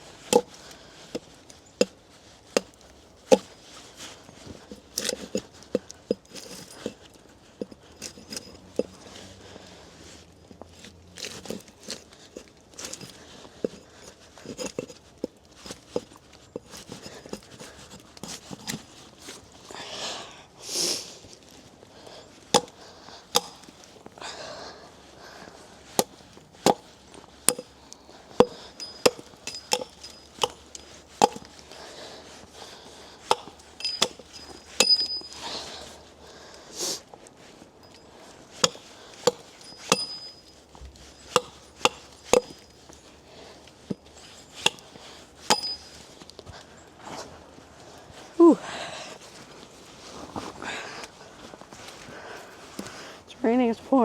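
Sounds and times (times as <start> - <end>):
axe chopping wood: 22.5 - 23.7, 25.9 - 27.7, 28.4 - 30.6, 31.2 - 31.5, 33.2 - 34.2, 38.6 - 40.4, 41.3 - 42.6, 44.6 - 44.9, 45.5 - 45.8.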